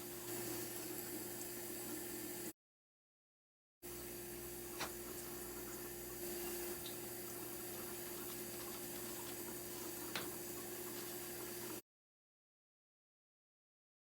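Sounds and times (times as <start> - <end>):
faucet running into sink: 0.0 - 2.5, 4.0 - 11.8.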